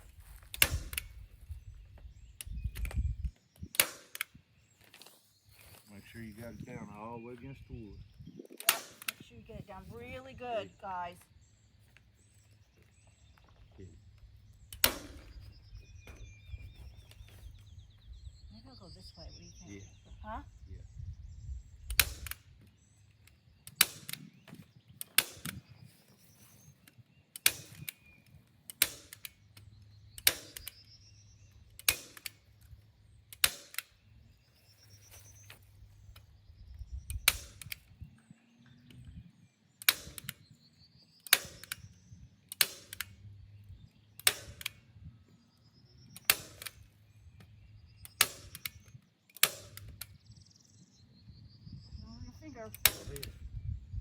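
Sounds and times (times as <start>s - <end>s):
staple gun snapping: 21.9s - 22.4s, 27.4s - 28.0s, 28.7s - 30.8s, 31.8s - 32.4s, 39.8s - 40.4s, 41.2s - 41.9s, 42.5s - 43.1s, 44.2s - 44.8s, 48.0s - 50.1s.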